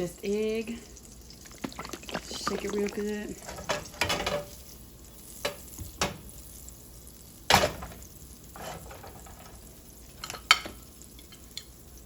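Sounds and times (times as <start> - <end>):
kitchen items knocking and clunking: 1.6 - 4.5, 8.6 - 9.6.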